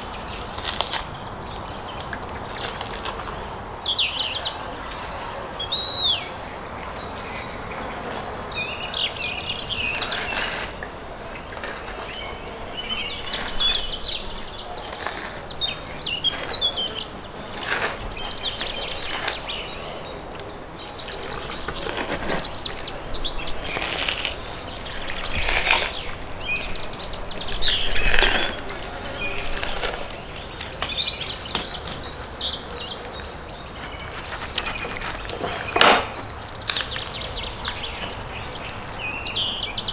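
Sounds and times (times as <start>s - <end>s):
birds chirping: 0.0s - 39.9s
sharp knocks and clatters: 34.8s - 37.1s.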